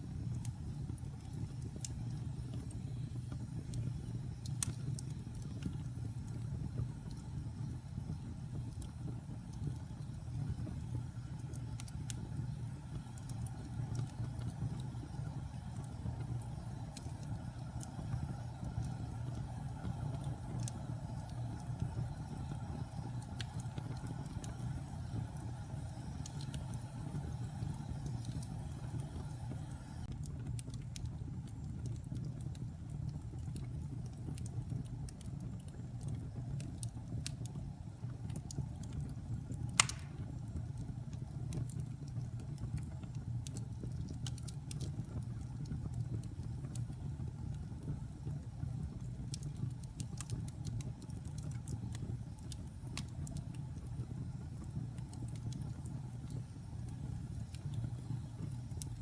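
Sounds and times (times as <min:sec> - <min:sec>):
fire crackling: 0:00.0 - 0:59.0
fire rumbling: 0:00.0 - 0:59.0
loud pop of fire: 0:39.7 - 0:40.5.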